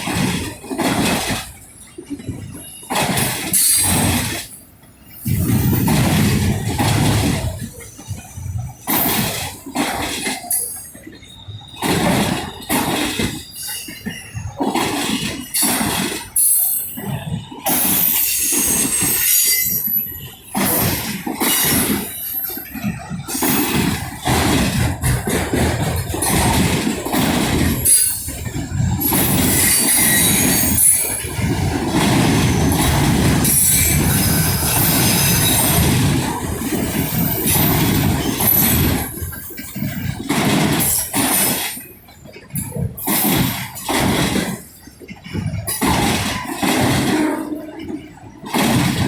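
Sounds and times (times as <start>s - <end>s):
steel wheels rumbling on rail: 0.0s - 49.0s
high wheel squeal: 10.4s - 24.3s, 26.2s - 39.8s.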